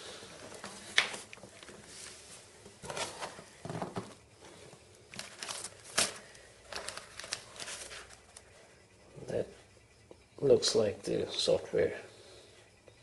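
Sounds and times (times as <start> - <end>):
packaging rustling: 5.1 - 8.5.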